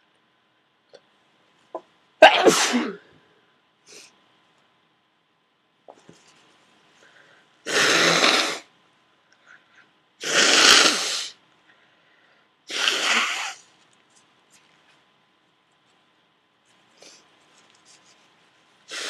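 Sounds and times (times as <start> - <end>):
person blowing nose: 7.7 - 8.7, 10.2 - 11.4, 12.7 - 13.6.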